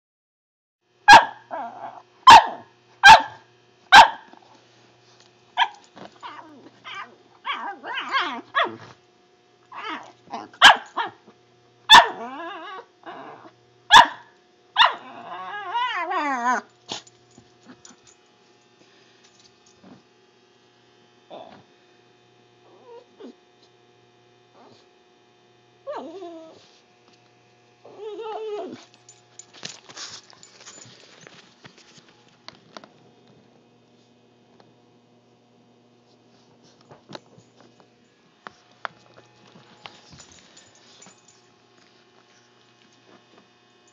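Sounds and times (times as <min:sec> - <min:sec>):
dog barking: 0:01.1 - 0:01.5, 0:02.3 - 0:04.3, 0:05.6 - 0:05.8, 0:07.5 - 0:08.8, 0:10.4 - 0:11.2, 0:11.9 - 0:12.2, 0:13.9 - 0:15.1
dog yelping and howling: 0:05.6 - 0:08.8, 0:09.7 - 0:11.2, 0:11.9 - 0:14.2, 0:14.8 - 0:16.7, 0:22.7 - 0:23.4, 0:25.8 - 0:26.7, 0:27.9 - 0:28.9
dog grumbling: 0:09.7 - 0:10.6, 0:12.2 - 0:13.5, 0:15.0 - 0:17.0, 0:27.9 - 0:28.9.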